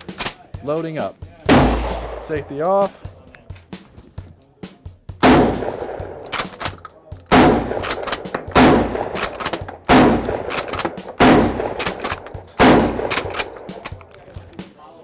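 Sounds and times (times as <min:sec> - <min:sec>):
shotgun shots: 0:00.0 - 0:00.5, 0:01.5 - 0:03.0, 0:05.2 - 0:14.3.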